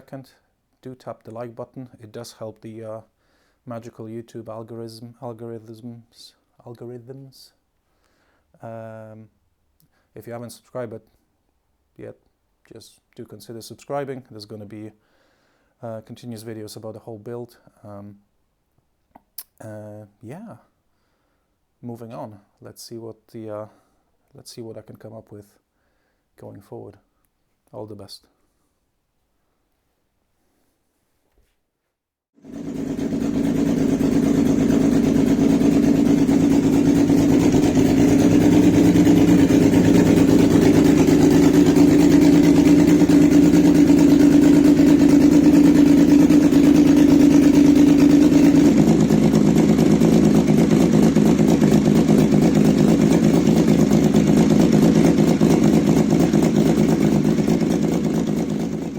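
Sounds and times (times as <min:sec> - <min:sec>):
motorcycle engine running: 0:32.4 - 0:58.9.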